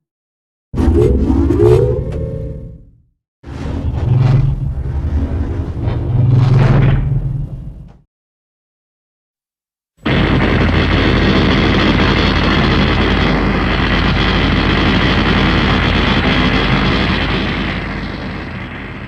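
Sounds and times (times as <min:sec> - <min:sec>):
harsh monster roar: 0:03.5 - 0:07.7.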